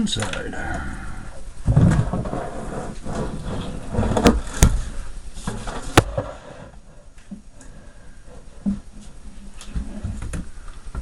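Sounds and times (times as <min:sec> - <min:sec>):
plastic housing handling rumble: 0:01.5 - 0:06.8.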